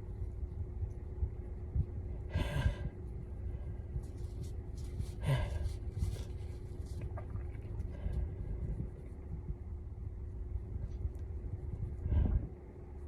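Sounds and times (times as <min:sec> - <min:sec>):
low rumble: 0:00.0 - 0:13.0
breaths and sniffs: 0:04.8 - 0:06.4.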